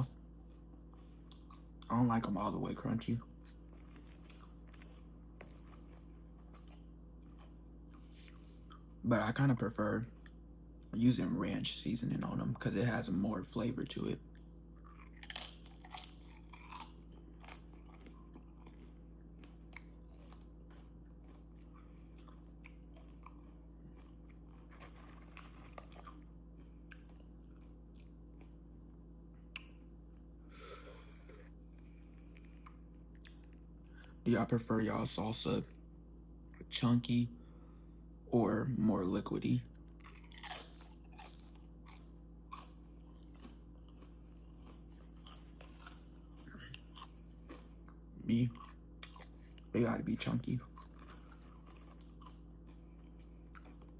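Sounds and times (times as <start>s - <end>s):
person chewing crunchy chips: 0.0s - 9.0s, 13.6s - 28.6s, 29.5s - 34.2s, 39.8s - 53.9s
low steady hum: 0.0s - 53.9s.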